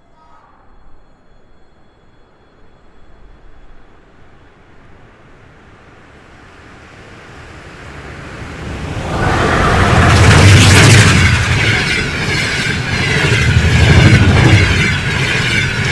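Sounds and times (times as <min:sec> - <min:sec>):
train approaching rumble: 0:00.1 - 0:15.9.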